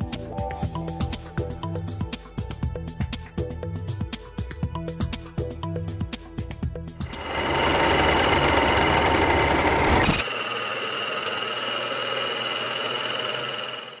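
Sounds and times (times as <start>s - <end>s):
small motor whirring hum: 7.0s - 14.0s.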